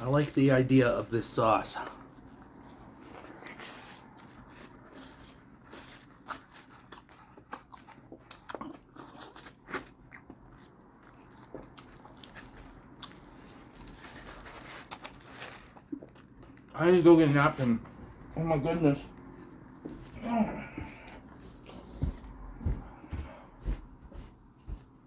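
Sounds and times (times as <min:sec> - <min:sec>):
person chewing sandwich: 0:01.7 - 0:16.8, 0:19.1 - 0:23.0.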